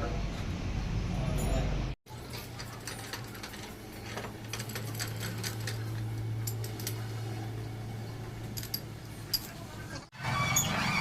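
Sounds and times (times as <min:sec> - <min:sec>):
steady low hum: 0:00.0 - 0:10.1
light metallic clicks and clinks: 0:08.5 - 0:09.7.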